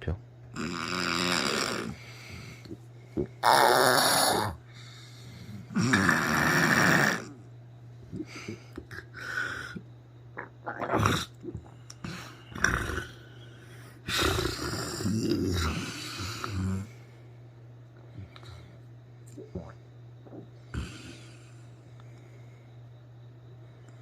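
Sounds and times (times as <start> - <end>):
person snoring through the mouth: 0.6 - 4.6, 5.4 - 7.4, 10.6 - 17.0, 19.4 - 21.6
breath sounds: 1.9 - 3.4.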